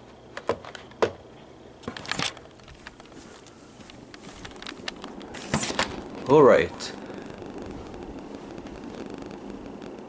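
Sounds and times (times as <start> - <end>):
rustling scrape: 2.7 - 6.2.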